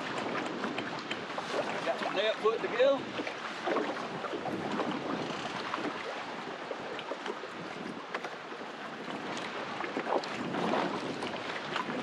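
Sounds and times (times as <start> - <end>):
small splashes and knocks: 0.0 - 6.2
water slapping against boat: 0.0 - 12.0
wind rushing over microphone: 0.0 - 12.0.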